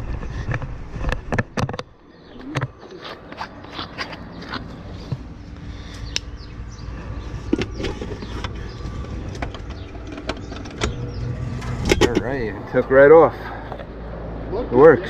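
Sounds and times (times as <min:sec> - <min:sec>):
low motor hum: 0:00.0 - 0:15.0
fan motor starting up: 0:07.7 - 0:14.1.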